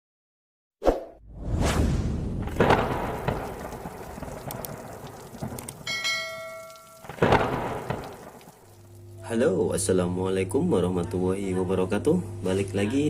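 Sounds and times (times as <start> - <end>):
rumbling rain-like noise: 2.4 - 9.3
bell-like chime: 5.9 - 7.1.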